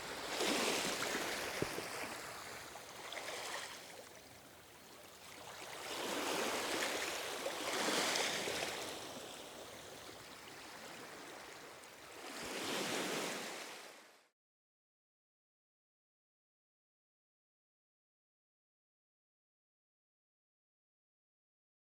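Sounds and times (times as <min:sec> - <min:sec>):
ocean waves washing ashore: 0:00.0 - 0:04.0, 0:05.3 - 0:14.2.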